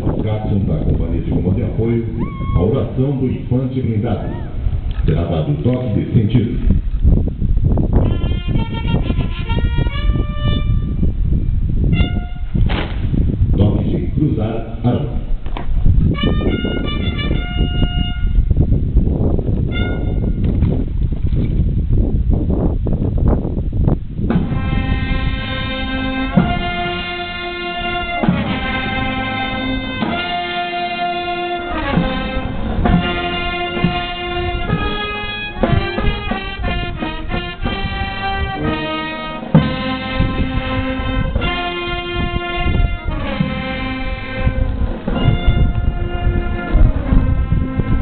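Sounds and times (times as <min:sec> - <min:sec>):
military brass band playing: 0:08.0 - 0:11.2, 0:11.8 - 0:12.6, 0:16.0 - 0:18.6, 0:19.6 - 0:20.4, 0:24.3 - 0:48.0.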